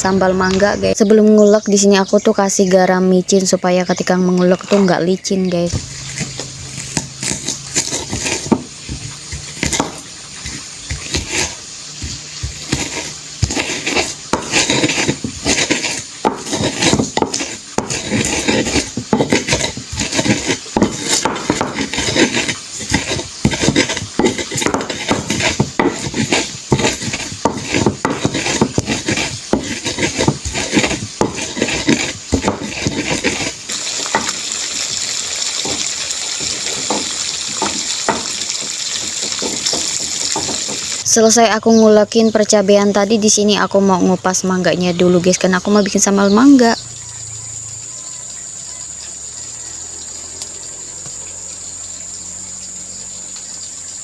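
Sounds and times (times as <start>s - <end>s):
pestle grinding in mortar: 5.6s - 41.4s
steady hiss: 5.7s - 41.2s.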